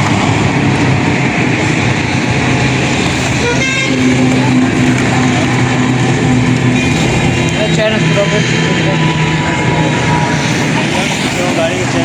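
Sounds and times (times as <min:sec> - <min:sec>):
passing vehicle engines: 0:00.0 - 0:12.0
vehicle horn toot: 0:03.4 - 0:04.1.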